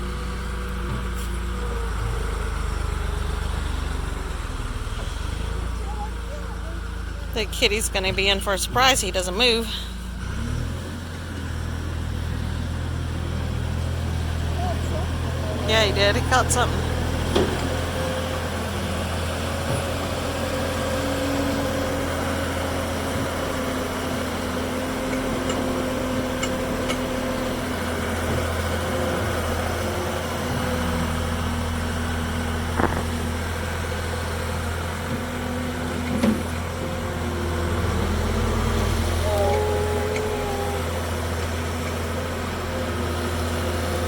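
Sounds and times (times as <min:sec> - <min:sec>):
loader engine running: 0:00.0 - 0:44.0
brief knocks: 0:32.8 - 0:33.2.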